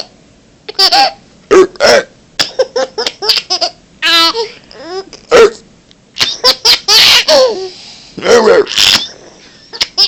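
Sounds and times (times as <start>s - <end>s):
high-pitched laughter: 6.2s - 7.7s, 8.7s - 10.0s.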